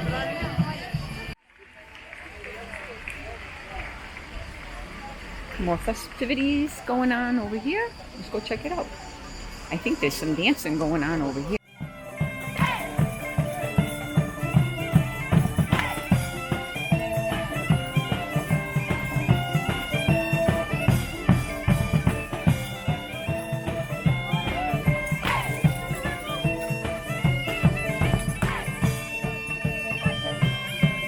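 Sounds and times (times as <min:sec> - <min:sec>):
bagpipes playing a melody: 0:09.7 - 0:31.0
drum beating: 0:11.6 - 0:31.0.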